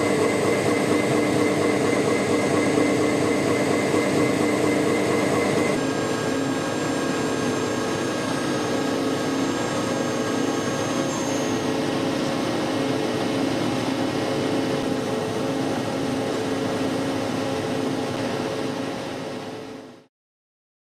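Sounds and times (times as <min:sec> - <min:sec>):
gear cutting machine drone: 0:00.0 - 0:16.1.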